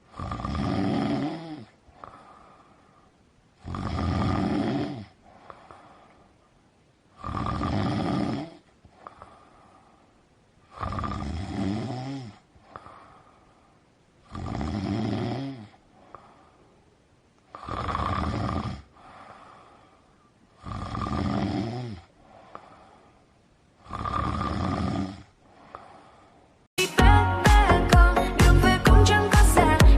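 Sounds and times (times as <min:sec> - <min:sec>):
loud snoring: 0:00.1 - 0:02.5, 0:03.6 - 0:05.8, 0:07.2 - 0:09.4, 0:10.7 - 0:13.1, 0:14.2 - 0:16.3, 0:17.5 - 0:19.2, 0:20.6 - 0:22.9, 0:23.8 - 0:26.0
faint breathing: 0:01.2 - 0:07.4, 0:08.5 - 0:11.1, 0:11.8 - 0:14.5, 0:15.4 - 0:18.0, 0:18.8 - 0:20.9, 0:21.8 - 0:24.1, 0:25.2 - 0:26.7.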